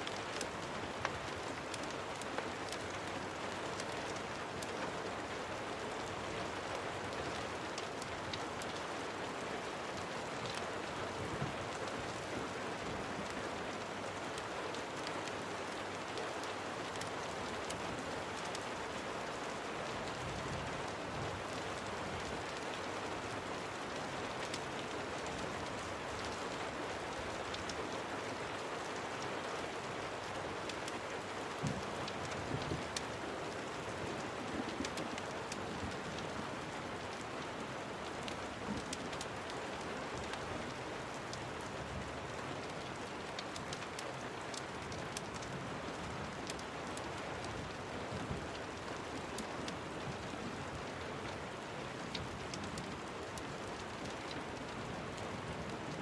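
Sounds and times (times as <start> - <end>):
sharp ticks and crackles: 0.0 - 8.9, 20.0 - 50.6, 52.0 - 56.0
steady rain falling: 0.0 - 56.0.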